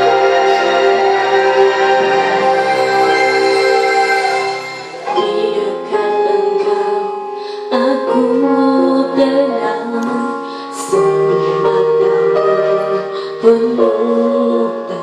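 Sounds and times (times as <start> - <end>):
keyboard accompaniment: 0.0 - 15.0
woman singing: 5.0 - 15.0.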